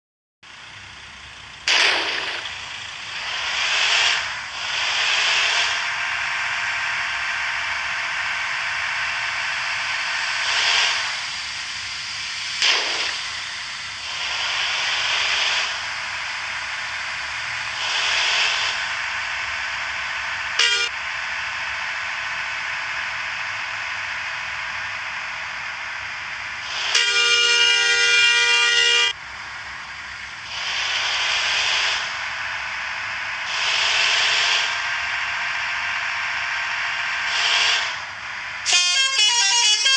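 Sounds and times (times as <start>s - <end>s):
brief horn blip: 20.6s - 20.9s, 26.9s - 29.1s, 38.7s - 39.9s
bus air horn chord: 20.6s - 20.9s, 26.8s - 29.1s, 38.6s - 39.9s.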